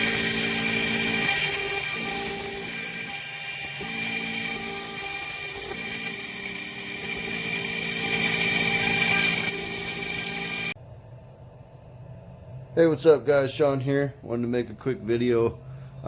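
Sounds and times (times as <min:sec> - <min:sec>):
router spindle whining milling metal: 0:00.0 - 0:10.8.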